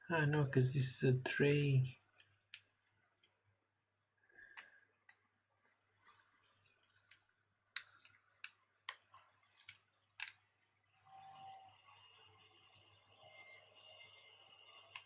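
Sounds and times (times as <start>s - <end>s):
plastic parts clicking: 6.6s - 10.4s, 14.1s - 15.0s.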